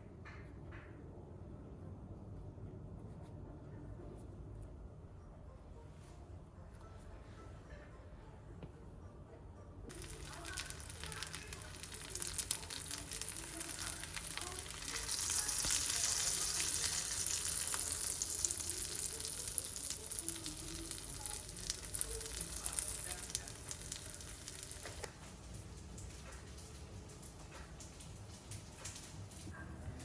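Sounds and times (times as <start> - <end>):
food sizzling in a hot pan: 9.9 - 25.3.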